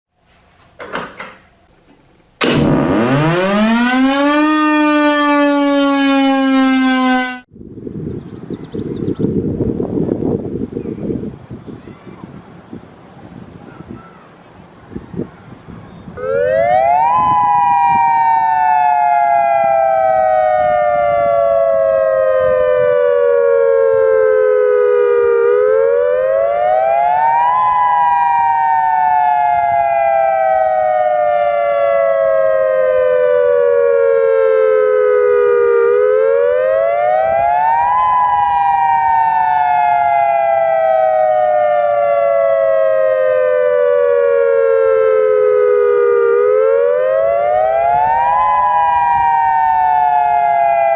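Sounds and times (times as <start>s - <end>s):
dual-tone warning siren wailing: 2.4s - 7.5s, 16.1s - 50.9s.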